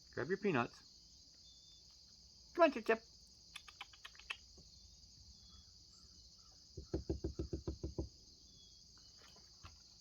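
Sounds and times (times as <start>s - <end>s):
high-pitched insect chorus: 0.0s - 10.0s
faint ticks: 3.5s - 4.4s.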